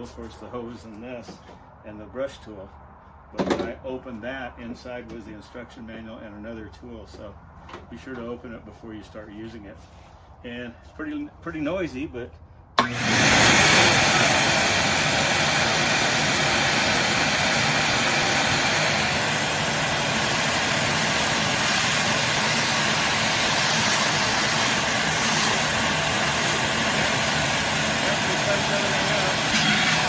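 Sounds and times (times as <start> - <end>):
shop vac running: 12.8 - 30.0.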